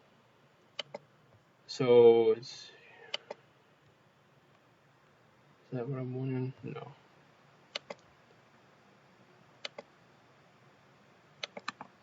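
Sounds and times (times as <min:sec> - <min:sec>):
faint room hiss: 0:00.0 - 0:12.0
computer mouse double-clicks: 0:00.8 - 0:01.0, 0:07.7 - 0:08.1, 0:09.6 - 0:09.9, 0:11.4 - 0:11.9.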